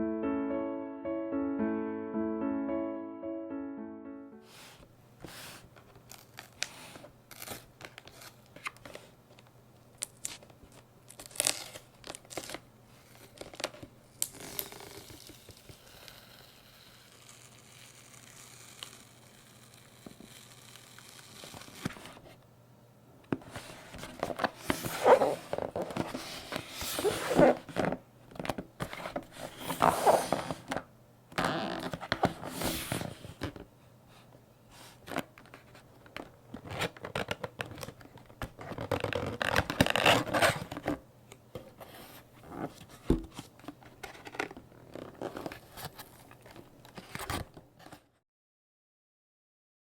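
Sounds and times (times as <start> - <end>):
packaging tearing and crinkling: 6.0 - 9.0, 11.1 - 16.4, 36.6 - 40.9
taps and rustles of handling: 23.2 - 48.1.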